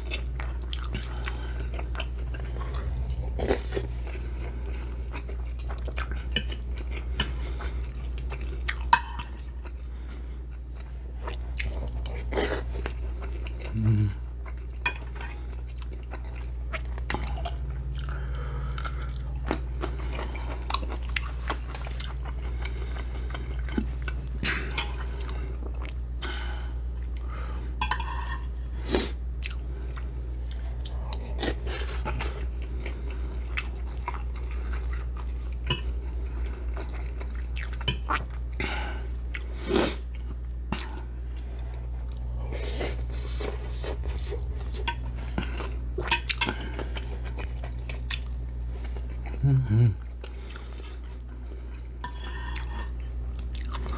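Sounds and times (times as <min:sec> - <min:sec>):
chewing and crunching food: 0:00.0 - 0:53.9.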